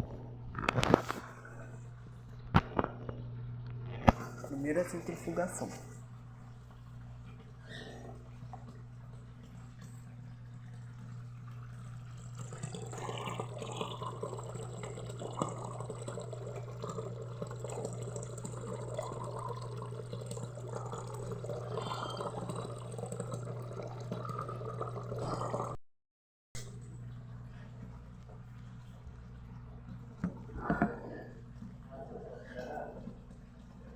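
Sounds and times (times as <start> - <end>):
washing machine motor humming: 0.0 - 25.8, 26.6 - 33.9
water rushing down drain: 7.8 - 25.8.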